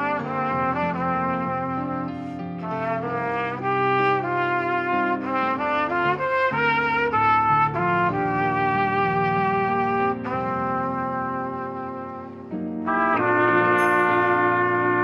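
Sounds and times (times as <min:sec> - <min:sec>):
trumpets playing in harmony: 0:00.0 - 0:15.0.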